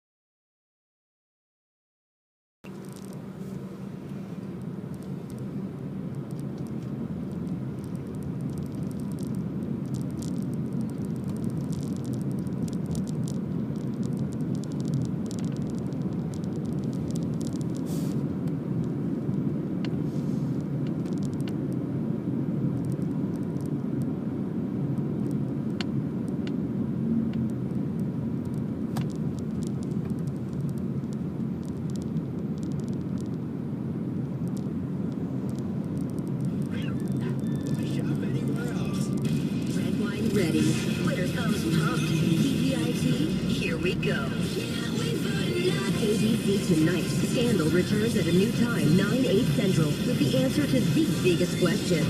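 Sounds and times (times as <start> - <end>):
road and engine rumble in car: 2.7 - 52.0
faint ticks: 28.4 - 33.4.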